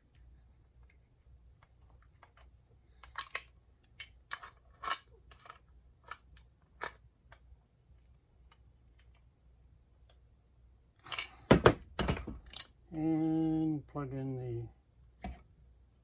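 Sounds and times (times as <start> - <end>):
clicks and knocks of parts handled: 0.1 - 9.3, 11.0 - 12.8.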